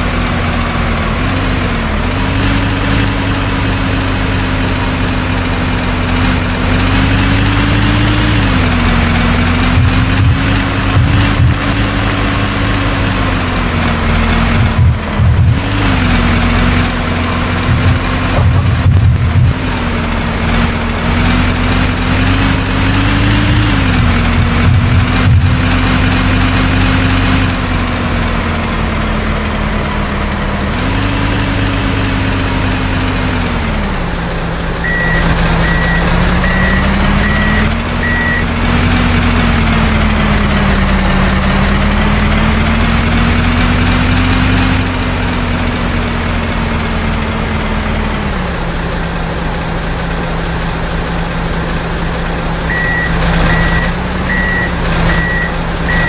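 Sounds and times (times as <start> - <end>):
heavy vehicle engine revving: 0.0 - 56.0
reversing alarm beeping: 34.8 - 38.5, 52.7 - 56.0.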